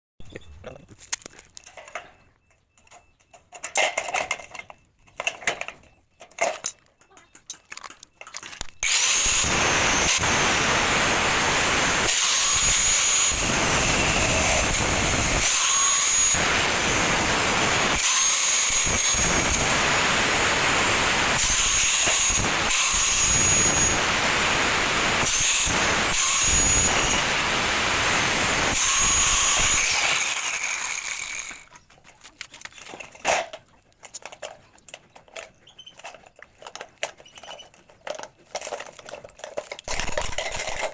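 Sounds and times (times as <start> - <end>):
handling sounds: 0.8 - 8.8
power tool cutting steel tube: 8.8 - 31.7.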